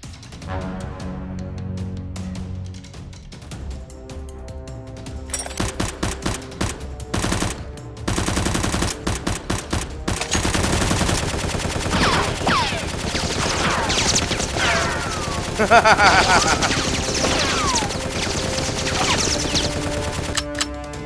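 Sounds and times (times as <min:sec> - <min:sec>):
automatic gunfire: 0:05.6 - 0:20.6
falling whistles: 0:13.6 - 0:20.0.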